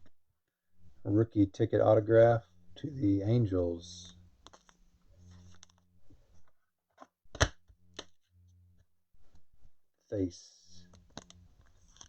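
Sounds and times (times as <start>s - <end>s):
trading cards clicking and rustling: 10.9s - 12.0s.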